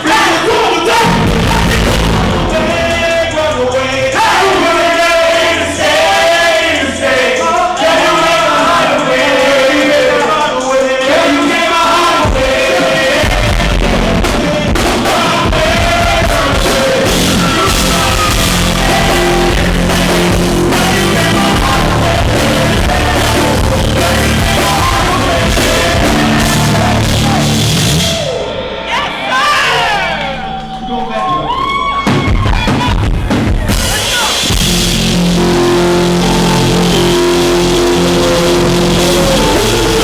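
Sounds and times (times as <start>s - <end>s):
live band music with singing: 0.0s - 29.5s, 31.9s - 40.0s.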